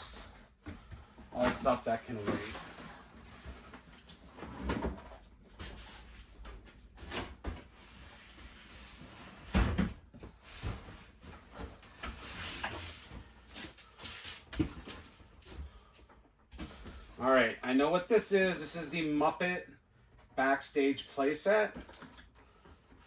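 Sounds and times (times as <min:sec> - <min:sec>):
knocks and thumps of boxes: 0:09.4 - 0:12.2.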